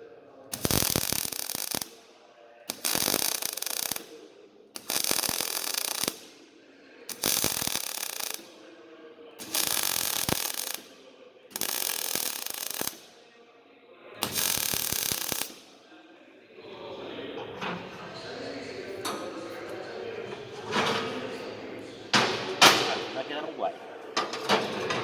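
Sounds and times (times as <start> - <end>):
welding arc crackling: 0.5 - 2.1, 2.7 - 4.2, 4.8 - 6.4, 7.1 - 8.6, 9.4 - 10.9, 11.5 - 13.1, 14.2 - 15.7.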